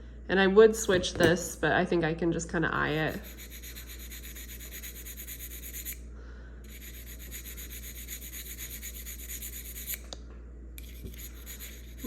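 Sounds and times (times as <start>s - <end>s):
sharpening stone rubbing on blade: 3.1s - 6.0s, 6.7s - 10.0s, 10.8s - 12.0s.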